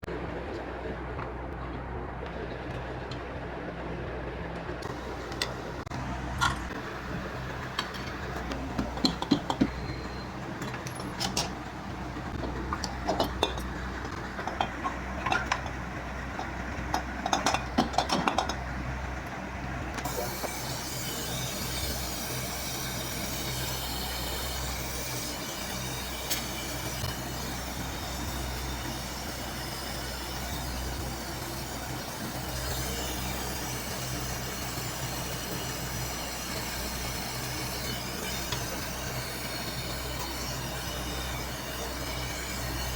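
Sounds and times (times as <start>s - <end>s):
steady low hum: 0.0s - 42.9s
steady hiss: 20.0s - 42.9s.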